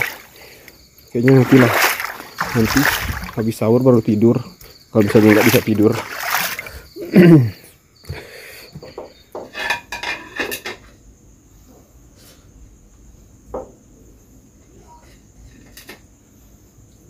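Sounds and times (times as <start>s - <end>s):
high insect trill: 0.0s - 17.0s
dishes clattering and clinking: 8.8s - 11.0s.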